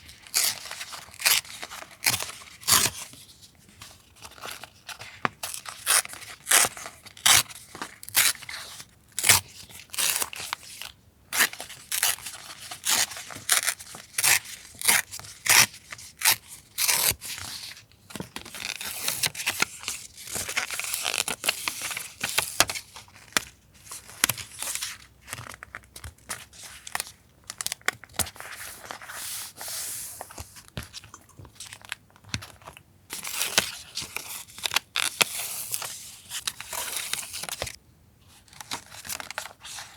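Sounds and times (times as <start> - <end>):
paper rustling and crinkling: 17.0 - 37.8, 38.4 - 39.9.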